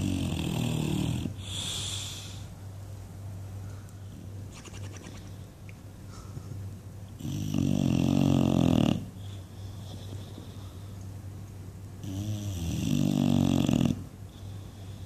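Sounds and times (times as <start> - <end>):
dog snoring: 0.0 - 2.0, 7.2 - 10.6, 12.0 - 15.0
steady low hum: 0.0 - 15.0.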